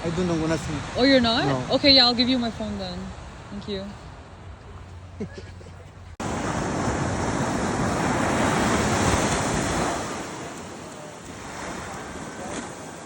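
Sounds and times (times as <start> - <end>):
surf washing on beach: 0.0 - 3.6, 6.2 - 13.0
wind buffeting microphone: 0.0 - 13.0.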